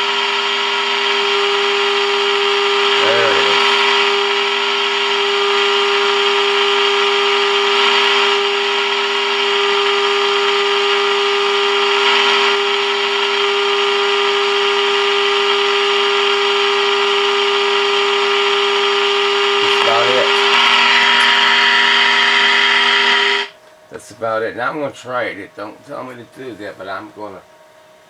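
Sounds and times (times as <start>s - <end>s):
static hiss: 0.0s - 27.4s
steady radio tone: 1.1s - 10.5s, 18.1s - 27.4s.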